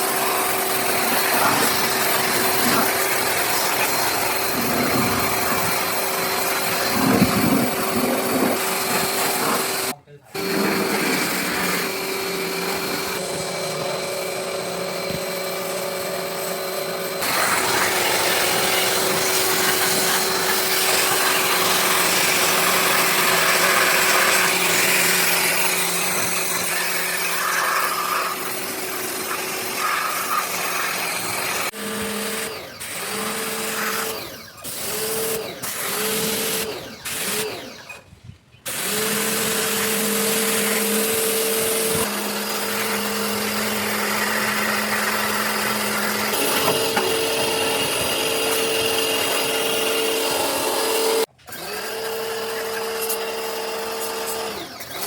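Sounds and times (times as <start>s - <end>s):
power tool electric motor: 0.0s - 37.9s, 38.7s - 55.0s.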